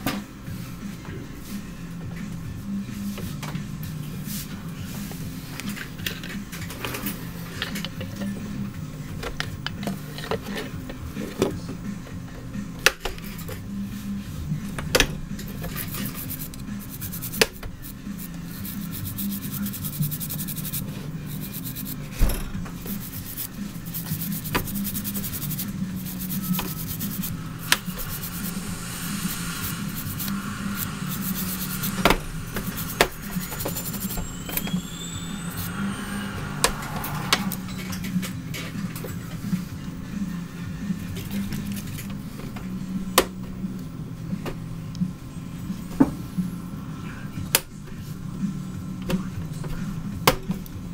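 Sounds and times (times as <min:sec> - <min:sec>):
hand tools scraping: 0:22.9 - 0:38.9.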